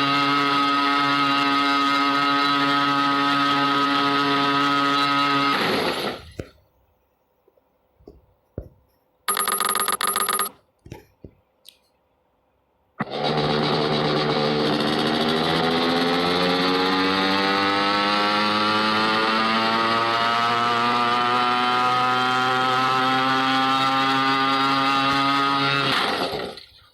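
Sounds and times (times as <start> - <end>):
scooter engine running: 0.0 - 6.5, 13.0 - 26.8.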